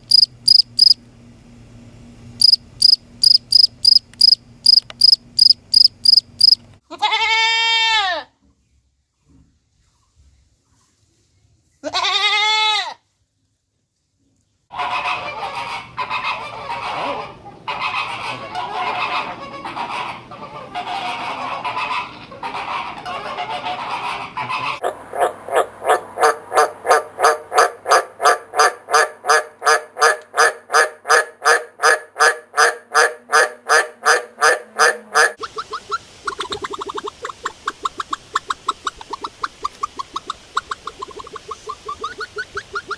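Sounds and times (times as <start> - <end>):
overlapping animal calls: 14.7 - 42.9
rapid pulsed animal calls: 23.9 - 42.9.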